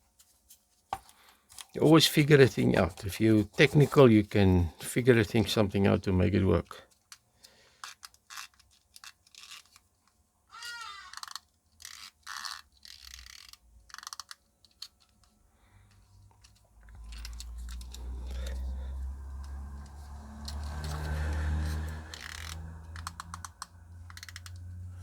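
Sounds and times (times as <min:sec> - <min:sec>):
plastic clock case clicking: 0:19.3 - 0:24.7.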